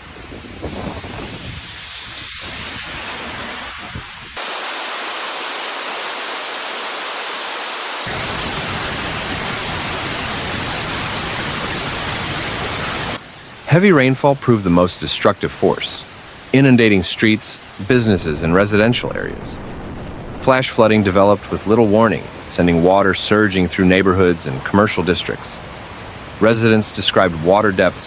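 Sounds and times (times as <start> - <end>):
heavy rain hissing: 1.2 - 21.0
storm noise: 17.8 - 21.0.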